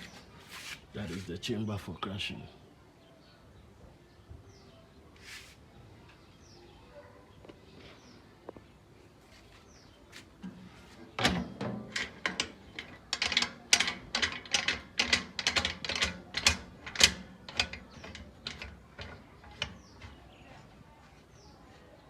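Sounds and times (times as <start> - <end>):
hand tools clicking on metal: 11.2 - 20.3.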